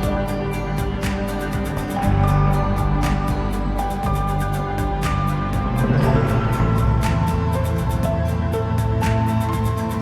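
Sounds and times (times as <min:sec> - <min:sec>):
synth chords over a light beat: 0:00.0 - 0:10.0.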